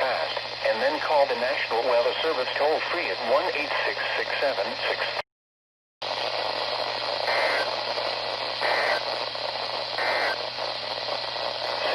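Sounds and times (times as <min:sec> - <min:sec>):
radio receiver hiss: 0:00.0 - 0:05.2, 0:06.0 - 0:11.9
two-tone digital data bursts: 0:08.6 - 0:09.1, 0:10.0 - 0:10.4.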